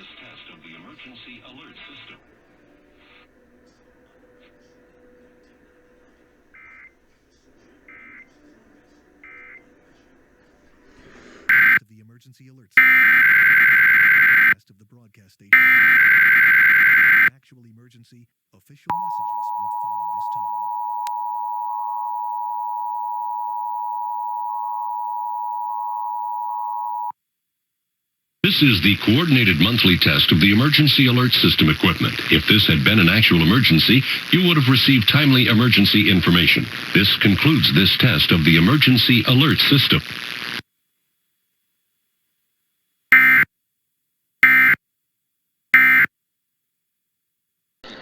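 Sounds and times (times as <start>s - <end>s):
two-tone alarm: 7.9s - 8.3s, 9.3s - 9.6s, 11.5s - 11.8s, 12.8s - 14.6s, 15.6s - 17.3s, 18.9s - 27.1s, 43.1s - 43.5s, 44.4s - 44.8s, 45.8s - 46.1s
digital data tone bursts: 11.5s - 11.8s, 12.8s - 14.6s, 15.6s - 17.3s, 18.9s - 27.1s, 28.5s - 40.6s, 45.8s - 46.1s.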